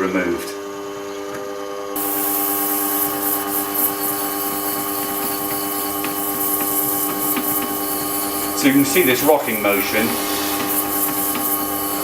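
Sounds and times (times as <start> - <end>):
blade grinding scrape: 2.0 - 12.0
sharpener motor humming: 2.0 - 12.0.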